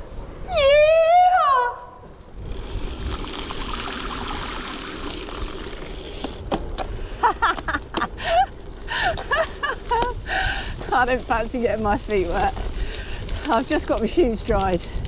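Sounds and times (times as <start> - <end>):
wind on microphone: 2.3 - 15.0
bike tyre hiss on wet road: 2.4 - 6.5, 8.8 - 14.4.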